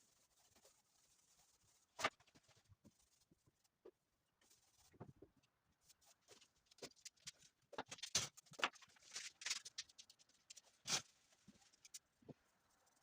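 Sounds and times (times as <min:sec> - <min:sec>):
scratching and rubbing strokes: 0:00.0 - 0:03.8, 0:04.4 - 0:05.0, 0:09.4 - 0:13.0.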